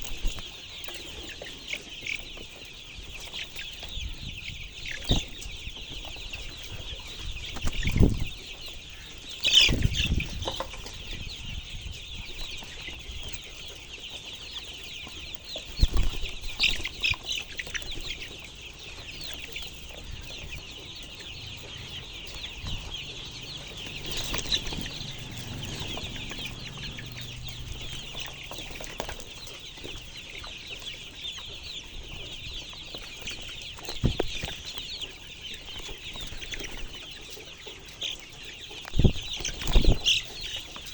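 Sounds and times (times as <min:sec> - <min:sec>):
chickens chattering: 0:00.0 - 0:40.9
low thumps: 0:34.0 - 0:34.5.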